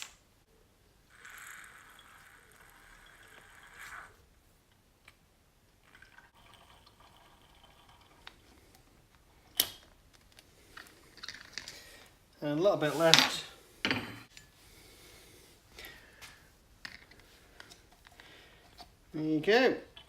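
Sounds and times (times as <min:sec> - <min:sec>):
faint liquid trickle: 0:05.8 - 0:08.9.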